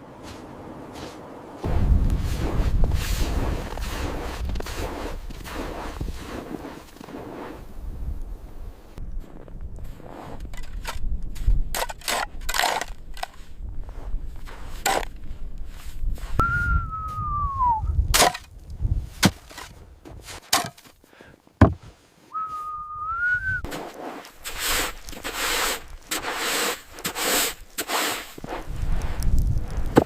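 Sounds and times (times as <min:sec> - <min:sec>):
regular crunching noises: 0:00.0 - 0:30.0
whistle-like tone: 0:16.4 - 0:17.9, 0:22.3 - 0:23.7
sharp cracks and knocks: 0:18.1 - 0:18.5, 0:29.2 - 0:30.0.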